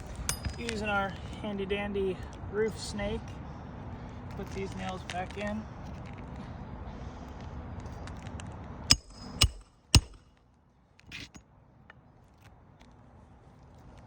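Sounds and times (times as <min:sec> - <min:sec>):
hammer strikes on metal tool: 0:08.9 - 0:10.2.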